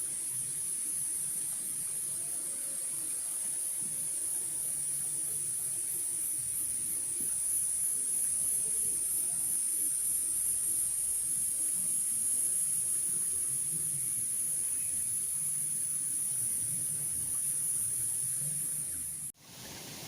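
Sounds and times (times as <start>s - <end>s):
forest insects chorus: 0.0s - 19.3s
flowing water: 0.0s - 20.0s.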